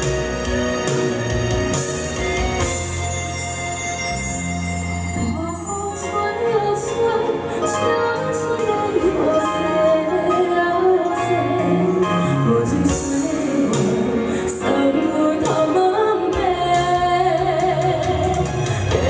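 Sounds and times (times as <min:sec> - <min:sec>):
instrumental accompaniment: 0:00.0 - 0:19.0
woman singing: 0:05.2 - 0:19.0.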